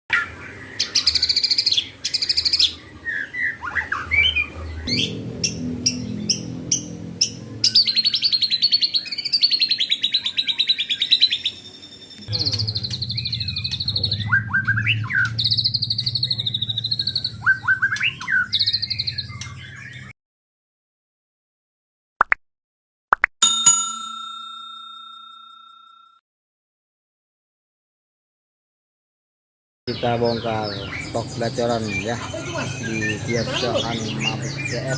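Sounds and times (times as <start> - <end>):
songbirds singing: 0.1 - 20.1, 29.9 - 34.9
low steady hum: 12.1 - 19.6.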